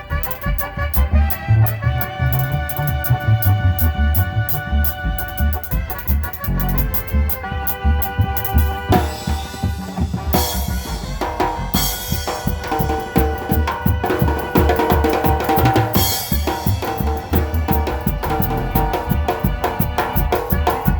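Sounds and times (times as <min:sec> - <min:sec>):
sustained pitched chords: 0:00.0 - 0:13.7
drum kit steady beat: 0:00.0 - 0:20.9.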